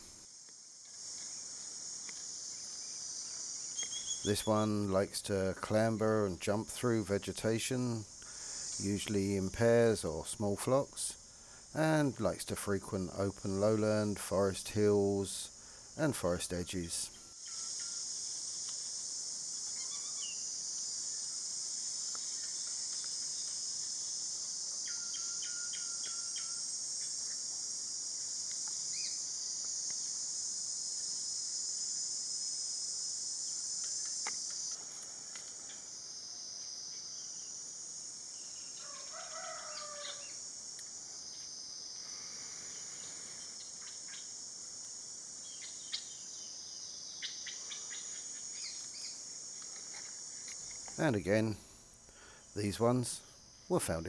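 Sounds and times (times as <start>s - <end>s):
crickets chirping: 0.0s - 54.0s
faint bird calls: 19.7s - 20.4s.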